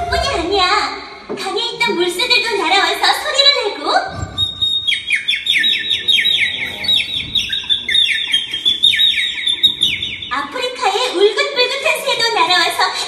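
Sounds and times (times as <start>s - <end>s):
water bird chirping: 4.2s - 10.5s.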